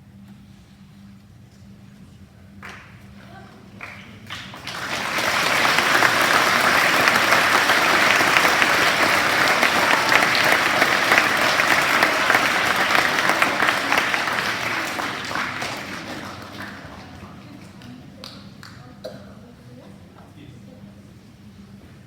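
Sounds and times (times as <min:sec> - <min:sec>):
children clapping: 0:03.8 - 0:18.9.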